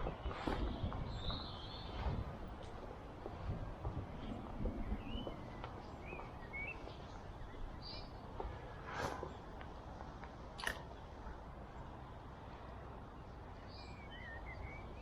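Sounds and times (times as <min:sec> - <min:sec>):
steady low rumble: 0:00.0 - 0:11.9.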